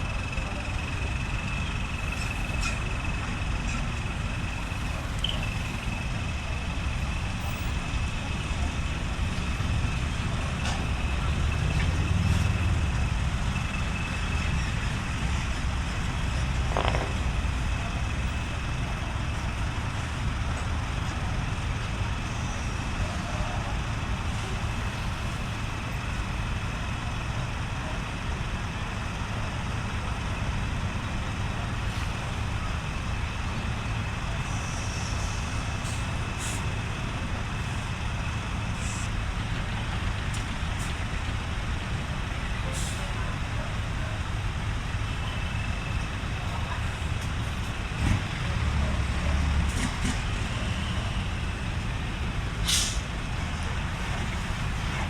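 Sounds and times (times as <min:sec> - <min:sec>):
truck diesel engine idling: 0:00.0 - 0:55.0.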